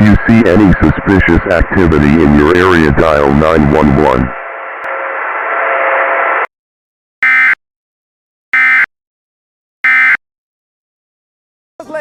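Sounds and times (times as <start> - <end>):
radio hiss: 0.0 - 6.5.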